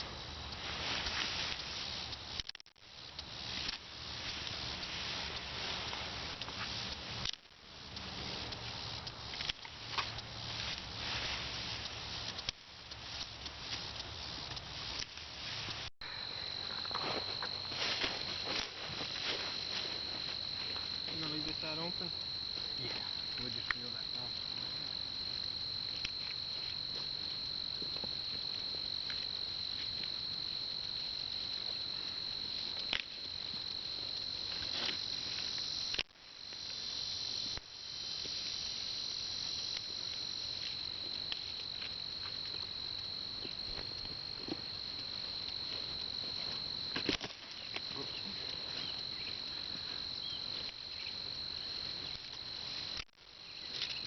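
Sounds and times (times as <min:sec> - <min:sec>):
crickets chirring: 0:00.0 - 0:54.0
brush rustling and snapping: 0:00.5 - 0:15.9, 0:16.8 - 0:21.1, 0:32.7 - 0:33.6, 0:43.4 - 0:49.4.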